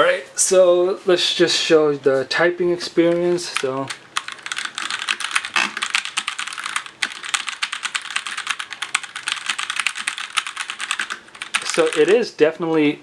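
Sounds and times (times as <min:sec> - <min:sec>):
fast typing on mechanical keyboard: 0:03.1 - 0:12.2.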